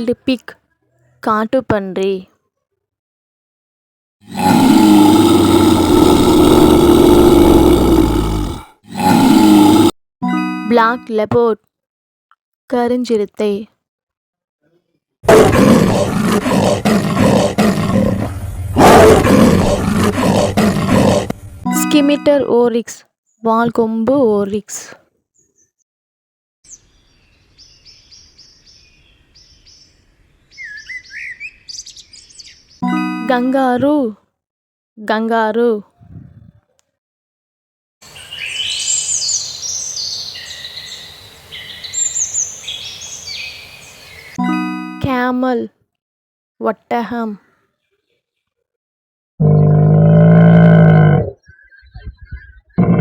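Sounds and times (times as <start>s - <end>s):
leopard growling roars: 4.3s - 9.9s, 15.3s - 21.6s, 49.4s - 51.4s, 52.8s - 53.0s
birds singing: 26.7s - 32.9s, 38.0s - 44.4s, 51.3s - 53.0s.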